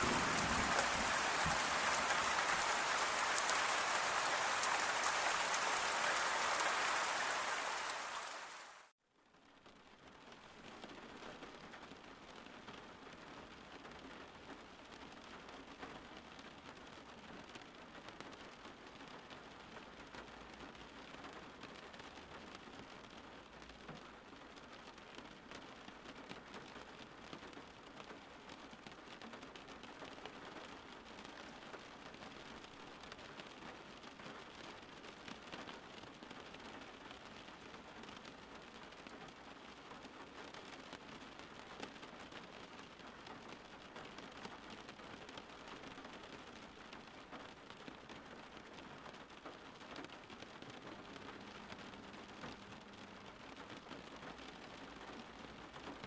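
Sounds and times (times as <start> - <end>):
raindrop taps: 0.0 - 8.6
steady rain hiss: 0.0 - 56.0.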